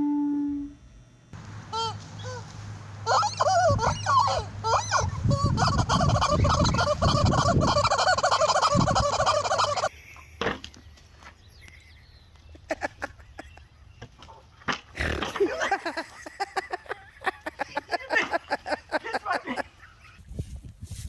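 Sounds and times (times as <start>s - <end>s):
turkeys gobbling: 3.0s - 9.9s.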